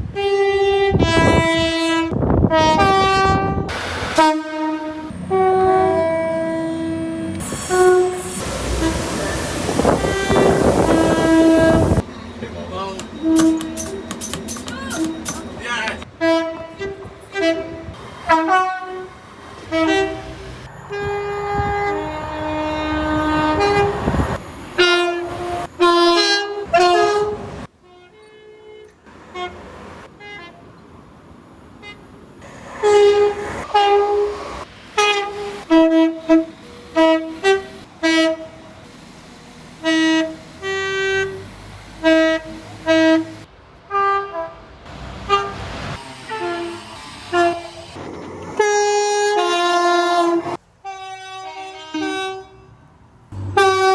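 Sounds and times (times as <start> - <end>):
passing train rumble: 0.0 - 27.8, 29.0 - 53.9
two-note train horn toots: 0.1 - 12.0, 16.2 - 24.2, 24.8 - 29.6, 32.8 - 34.4, 35.0 - 38.7, 39.8 - 44.6, 45.2 - 48.0, 48.6 - 52.7, 53.4 - 53.9.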